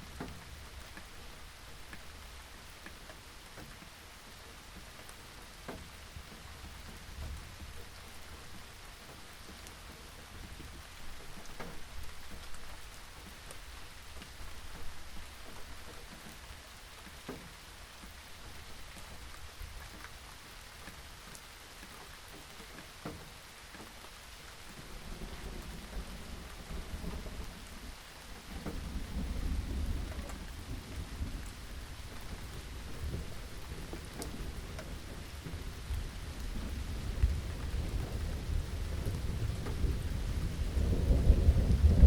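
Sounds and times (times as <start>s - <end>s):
raindrop ticks: 0.0s - 42.0s
steady rain falling: 0.0s - 42.0s
thunder rumbling: 24.9s - 42.0s.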